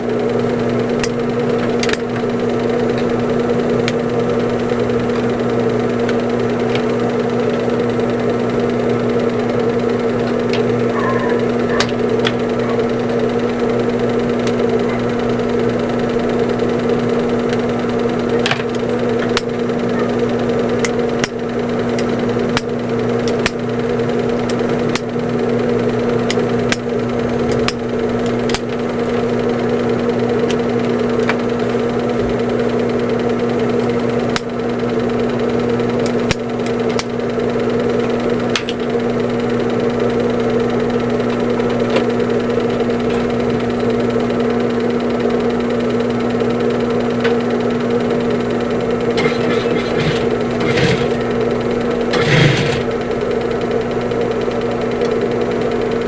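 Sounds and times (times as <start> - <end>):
electric motor hum: 0.0 - 56.0
sharp clicks: 26.2 - 28.8.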